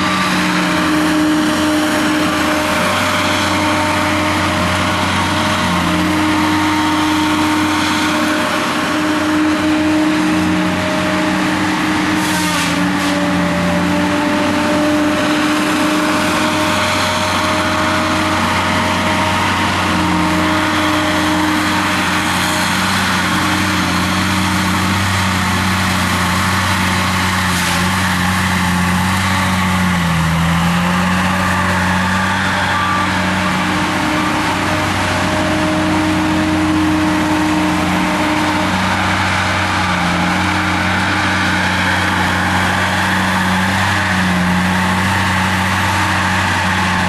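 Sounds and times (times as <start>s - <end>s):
machinery engine under load: 0.0s - 47.0s.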